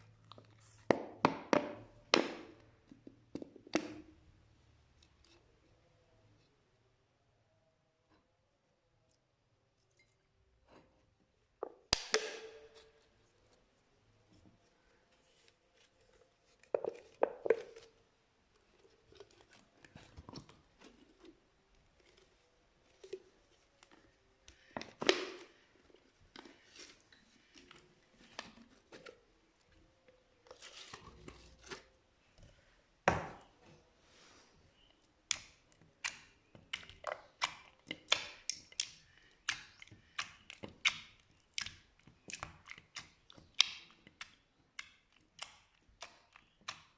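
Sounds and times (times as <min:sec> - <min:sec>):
slime squelching and clicking: 0:35.2 - 0:46.9.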